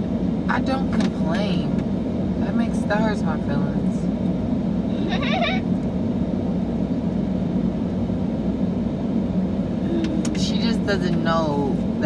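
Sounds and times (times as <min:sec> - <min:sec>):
car cabin rumble: 0:00.0 - 0:06.4, 0:09.6 - 0:12.0.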